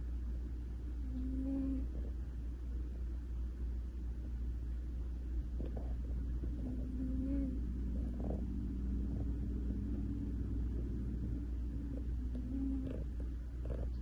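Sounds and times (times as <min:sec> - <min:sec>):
cat purring: 0:01.0 - 0:02.2, 0:05.4 - 0:14.0.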